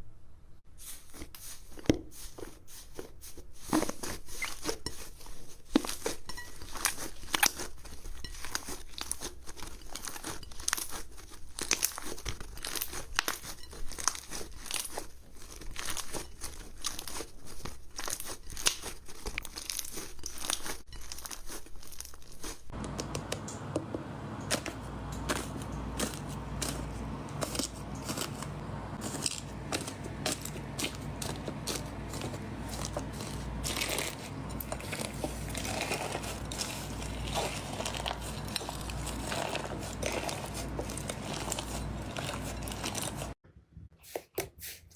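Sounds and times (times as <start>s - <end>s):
slime crackling and popping: 5.7s - 22.6s, 25.2s - 43.4s
steady low hum: 22.7s - 43.4s.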